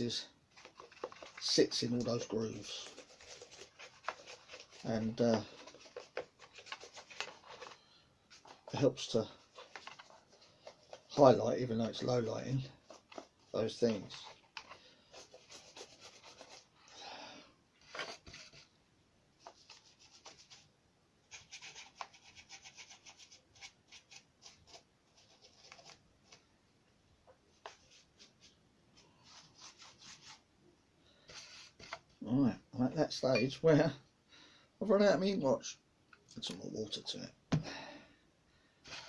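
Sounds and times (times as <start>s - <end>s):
paintbrush strokes on paper: 0.6s - 16.8s.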